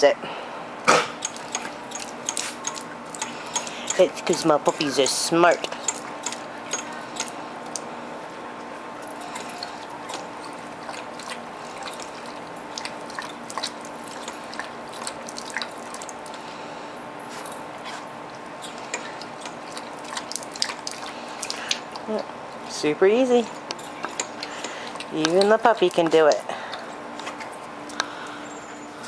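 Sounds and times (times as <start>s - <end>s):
dog licking clicks: 5.6s - 7.8s, 23.7s - 26.4s
water dripping and trickling: 9.6s - 16.4s, 18.7s - 22.1s.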